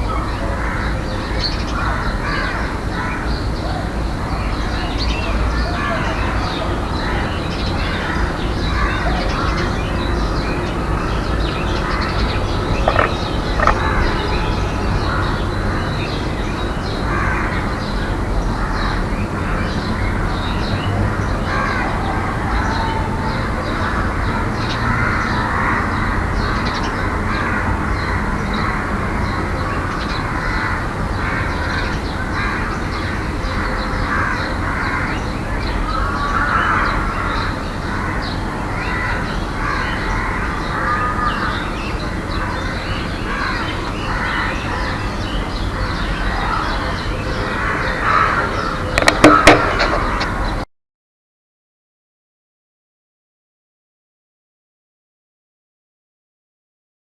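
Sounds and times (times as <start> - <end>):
birds calling and singing: 0.0 - 50.6
sharp clicks: 12.8 - 13.9, 49.0 - 50.3.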